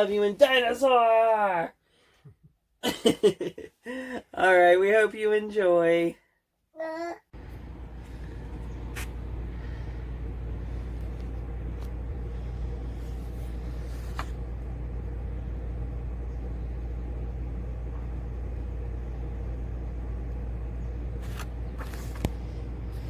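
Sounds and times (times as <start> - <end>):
vehicle rumbling on the move: 7.4 - 23.0.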